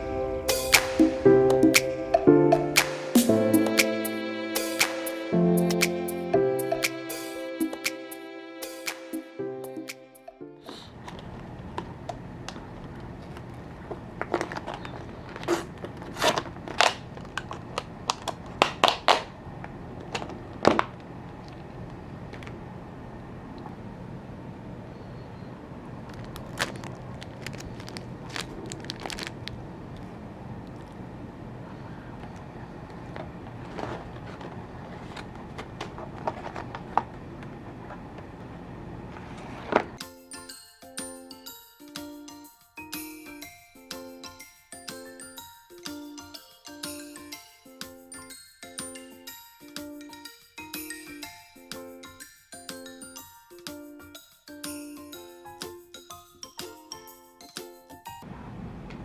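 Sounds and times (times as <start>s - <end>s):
tinkling music: 0.0s - 10.3s, 40.0s - 58.2s
steady background noise: 0.0s - 40.0s
low background hum: 10.7s - 40.0s.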